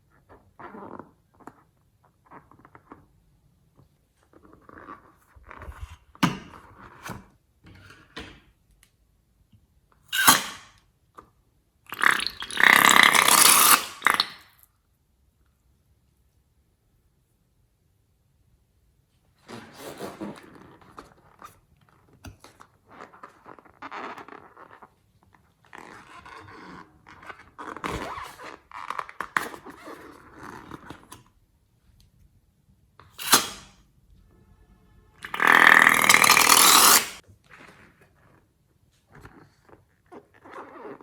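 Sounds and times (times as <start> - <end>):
slime squelching and crackling: 11.9 - 14.4.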